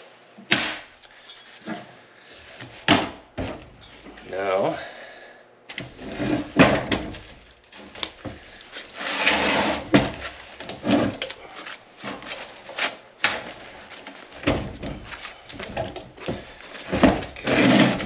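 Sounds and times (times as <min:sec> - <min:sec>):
tools and metal parts clunking: 0:01.2 - 0:02.0, 0:03.4 - 0:04.3
scraping rub: 0:05.9 - 0:06.6, 0:08.4 - 0:14.0, 0:16.4 - 0:18.0.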